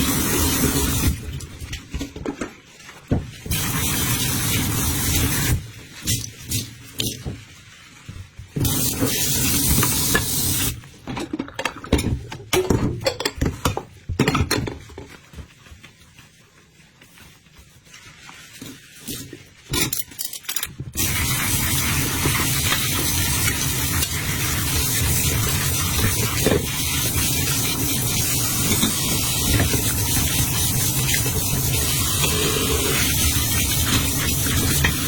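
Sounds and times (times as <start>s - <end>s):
dishes and utensils clattering: 9.8s - 15.2s, 19.6s - 21.0s, 28.2s - 35.0s.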